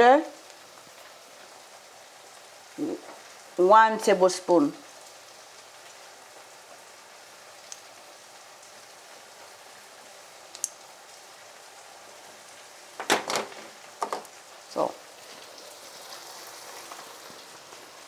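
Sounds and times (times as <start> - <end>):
food sizzling in a pan: 0.0 - 13.0, 13.7 - 18.0
sharp clicks and knocks: 13.0 - 14.3.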